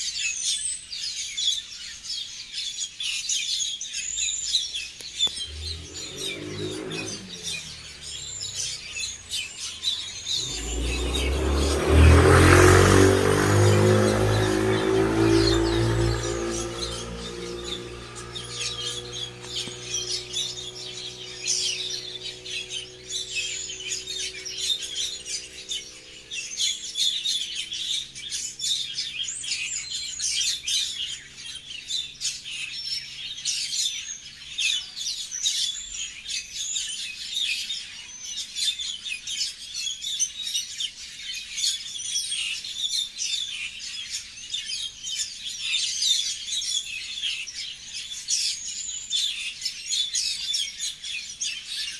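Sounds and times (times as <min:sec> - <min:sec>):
songbirds chirping: 0:00.0 - 0:51.9
low held musical tones: 0:05.2 - 0:27.8.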